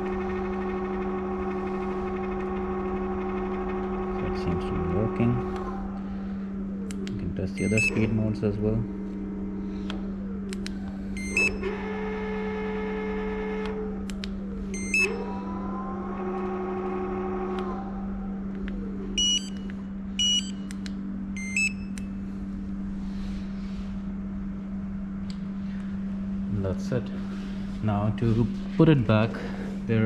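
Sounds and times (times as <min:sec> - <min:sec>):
electric motor whine: 0:00.0 - 0:19.2
steady low hum: 0:00.0 - 0:30.0.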